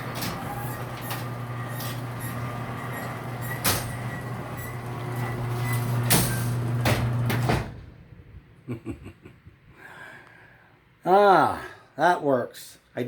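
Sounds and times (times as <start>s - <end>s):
electric motor humming: 0.0s - 7.4s
garage door on track: 0.0s - 8.3s.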